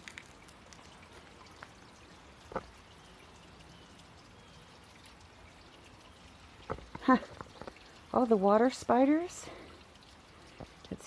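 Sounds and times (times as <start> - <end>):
creek water trickling: 0.0 - 11.0.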